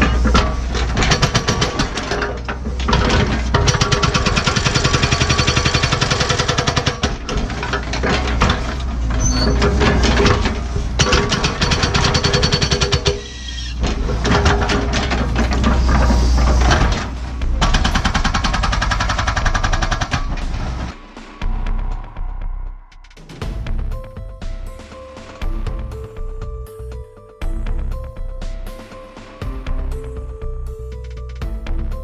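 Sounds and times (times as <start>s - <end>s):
hydraulic hammer breaking rock: 0.0s - 21.0s
diesel engine running: 0.0s - 22.0s.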